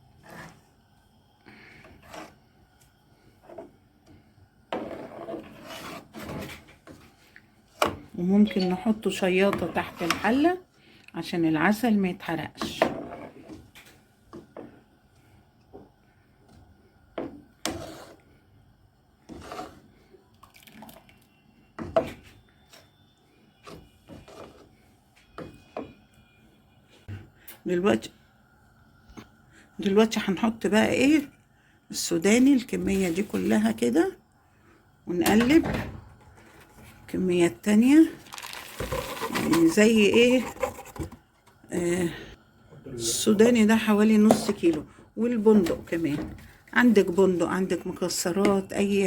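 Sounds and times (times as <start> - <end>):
cookware scraping on stove: 38.8 - 41.2.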